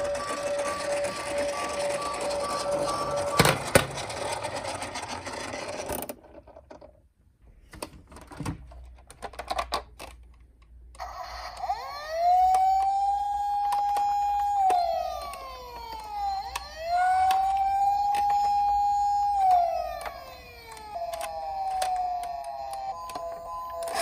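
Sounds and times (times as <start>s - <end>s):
toy police siren wailing: 0.0s - 3.8s, 11.0s - 24.0s.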